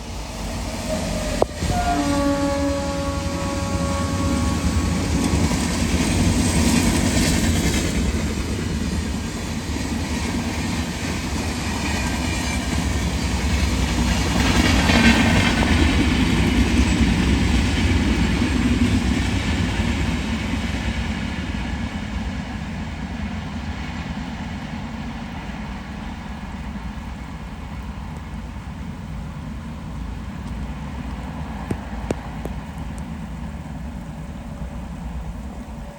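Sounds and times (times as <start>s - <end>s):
passenger train rolling past: 0.0s - 35.9s.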